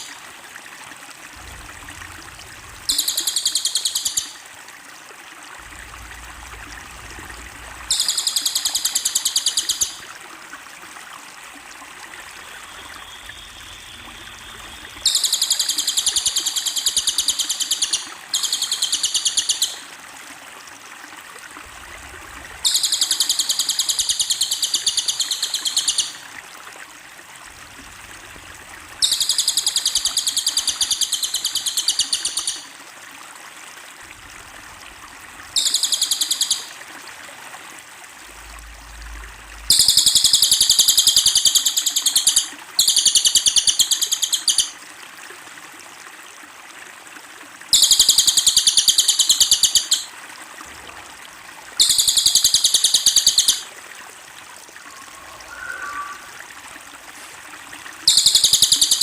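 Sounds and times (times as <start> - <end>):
songbird singing fast high notes: 54.8 - 56.8.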